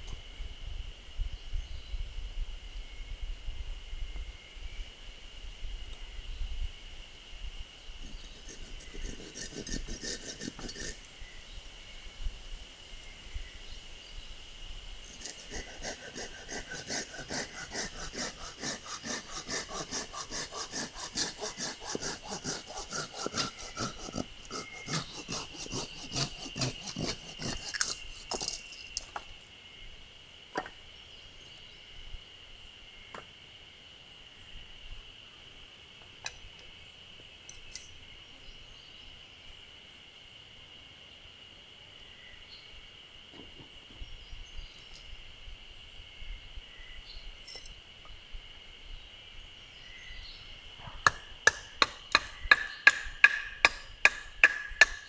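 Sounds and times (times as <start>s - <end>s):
hand saw cutting wood: 8.0s - 11.1s, 15.0s - 29.3s, 51.0s - 55.0s.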